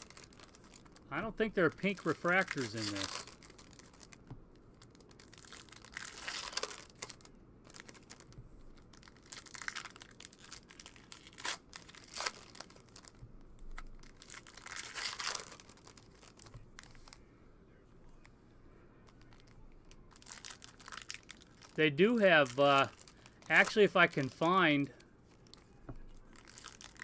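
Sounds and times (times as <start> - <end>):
card pack wrappers tearing: 0.0 - 4.2, 4.8 - 8.3, 8.9 - 17.2, 20.1 - 27.0
cards being handled: 0.0 - 4.4
sharp crackles: 0.0 - 17.3, 19.0 - 27.0.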